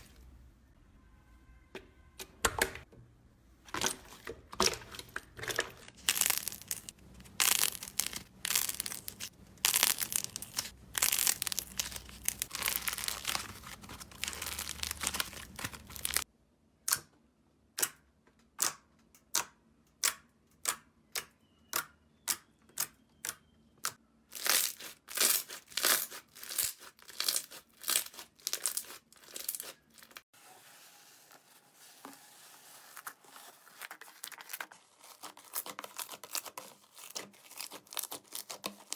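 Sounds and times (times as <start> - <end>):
slime crackling and popping: 6.0 - 16.2, 34.5 - 38.9.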